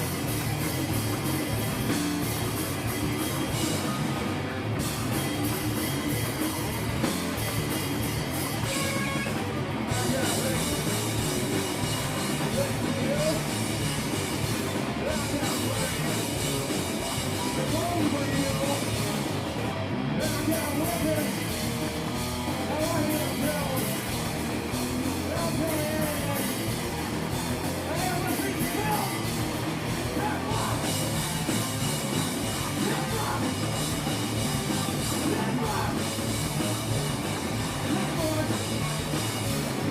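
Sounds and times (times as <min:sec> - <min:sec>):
distorted electric guitar: 0:00.0 - 0:39.9
drum kit: 0:00.0 - 0:39.9.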